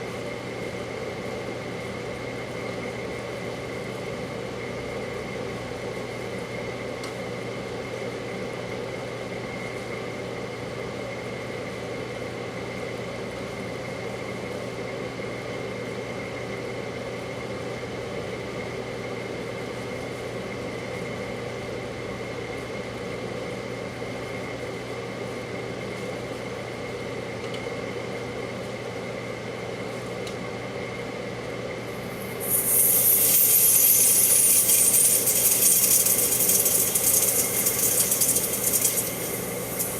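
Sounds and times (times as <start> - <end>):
microwave oven humming: 0.0 - 39.9
loud hissing: 32.3 - 39.9.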